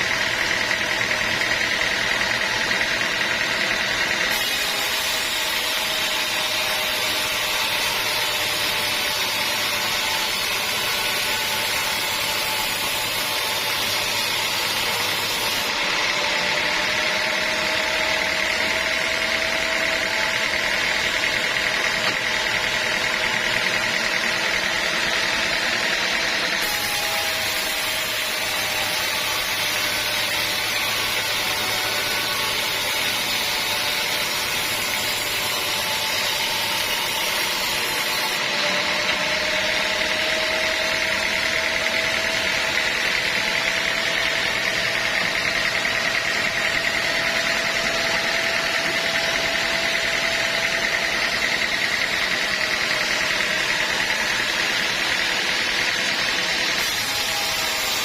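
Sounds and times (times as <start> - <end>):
sawmill machinery sawing logs: 0.0 - 58.0.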